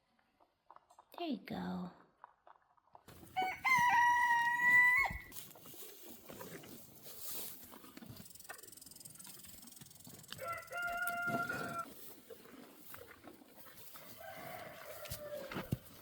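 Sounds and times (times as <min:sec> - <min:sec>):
chicken calling: 0:10.4 - 0:11.9.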